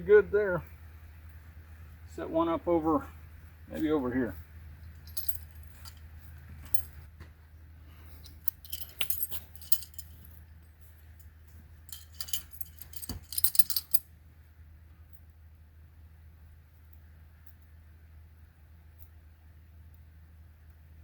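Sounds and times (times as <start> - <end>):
metal trap clinking and rattling: 4.8 - 7.0, 8.1 - 10.4, 11.9 - 14.0.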